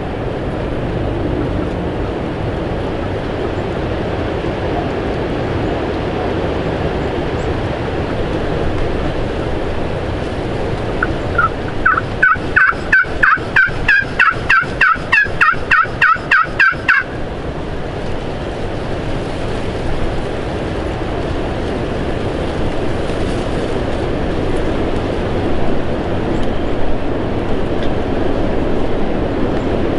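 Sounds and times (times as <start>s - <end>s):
wind noise: 0.0s - 29.9s
turkey yelps: 11.0s - 17.1s.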